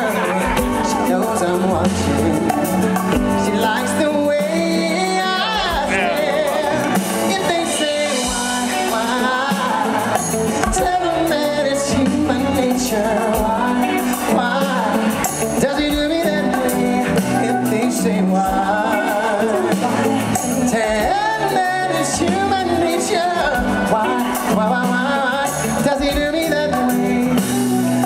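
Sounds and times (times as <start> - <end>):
song with singing voice: 0.0 - 28.0.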